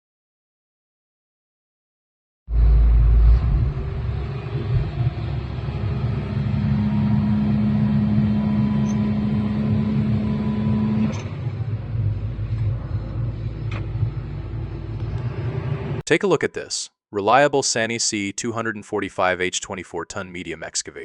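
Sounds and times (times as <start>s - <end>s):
diesel engine rumbling: 2.5s - 16.1s
steady hum: 2.5s - 16.1s
click: 10.9s - 11.3s, 13.7s - 13.9s, 15.0s - 15.3s.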